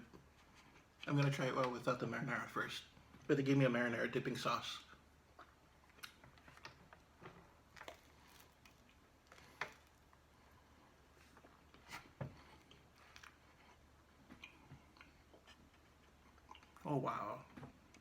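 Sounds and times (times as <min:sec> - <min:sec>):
person biting and chewing bread: 0:05.3 - 0:16.9.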